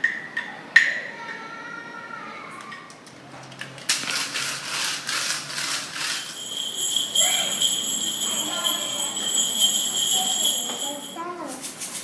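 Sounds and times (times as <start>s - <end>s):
faint children's voices: 0.2s - 3.4s, 7.2s - 12.0s
shaken sleigh rattle: 4.1s - 12.0s.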